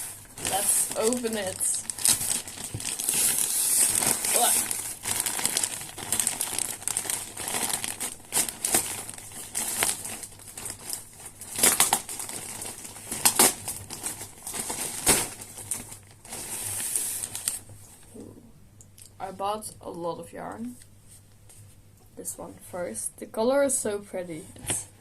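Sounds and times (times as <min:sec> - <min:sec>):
packaging crinkling: 0:00.0 - 0:17.7.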